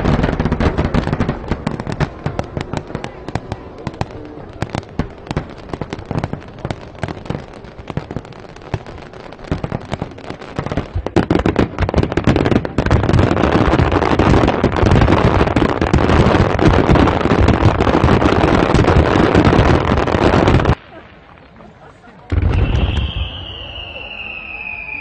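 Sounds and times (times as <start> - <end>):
fireworks bangs and crackles: 0.0 - 25.0.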